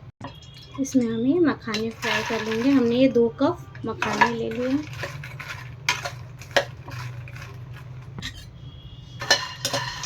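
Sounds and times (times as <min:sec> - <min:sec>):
utensil scraping a pan: 0:01.7 - 0:03.1, 0:03.9 - 0:10.0.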